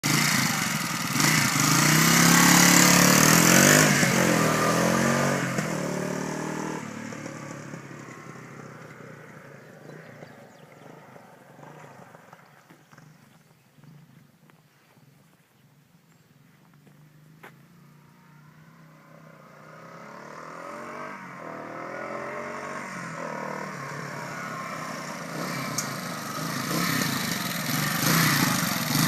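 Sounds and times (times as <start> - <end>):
motorcycle engine running: 0.0 - 14.2, 23.5 - 29.0.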